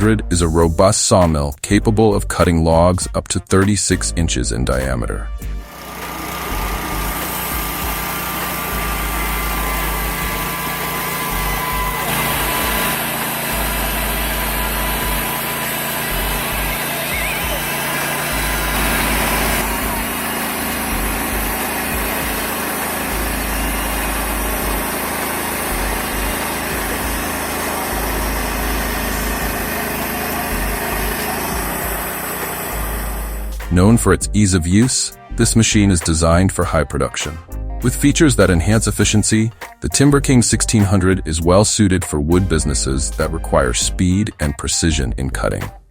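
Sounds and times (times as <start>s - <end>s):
band sawmill engine running: 0.0s - 1.4s, 4.7s - 45.0s.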